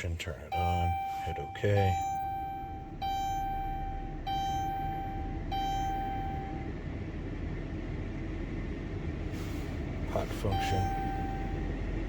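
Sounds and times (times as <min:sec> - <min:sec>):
dashboard warning chime: 0:00.0 - 0:06.7, 0:10.2 - 0:11.9.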